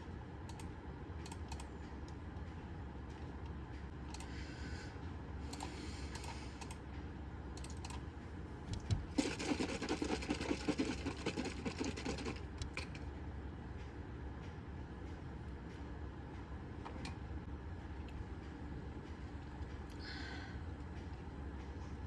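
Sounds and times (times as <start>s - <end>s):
computer keyboard typing: 0.4s - 2.2s, 8.7s - 13.0s.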